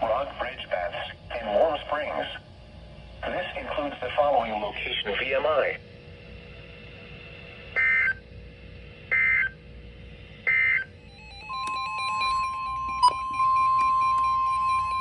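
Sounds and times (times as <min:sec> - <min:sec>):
steady electronic tone: 0:10.2 - 0:15.0
data tone bursts: 0:10.5 - 0:15.0.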